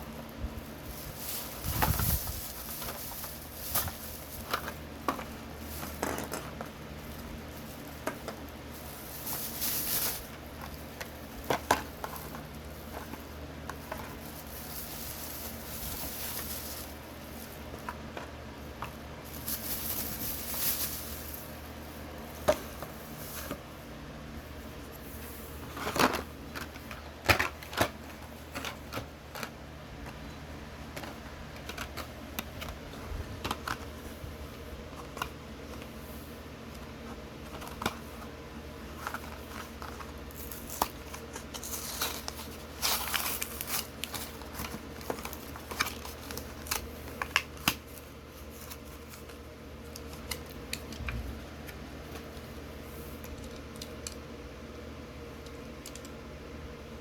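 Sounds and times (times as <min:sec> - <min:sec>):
packaging rustling: 0:00.0 - 0:23.7, 0:36.7 - 0:51.0.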